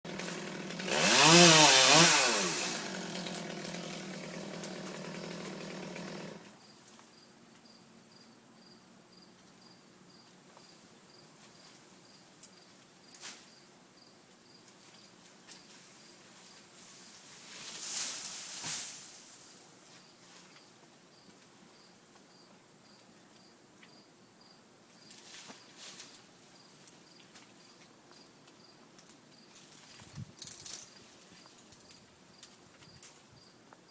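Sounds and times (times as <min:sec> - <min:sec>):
chainsaw revving: 0:00.1 - 0:06.6.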